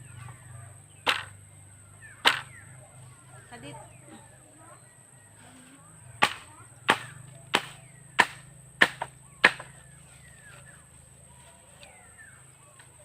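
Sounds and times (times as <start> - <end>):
hand tool striking blows: 1.0 - 1.4, 2.2 - 2.6, 6.2 - 9.8.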